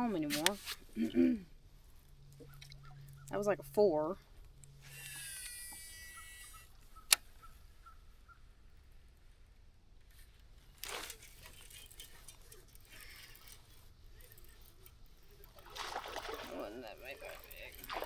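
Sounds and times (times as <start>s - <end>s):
short rustle: 0.2s - 1.0s
fishing line whizzing off reel: 4.8s - 7.5s, 15.4s - 18.0s
fishing reel click: 4.9s - 7.5s.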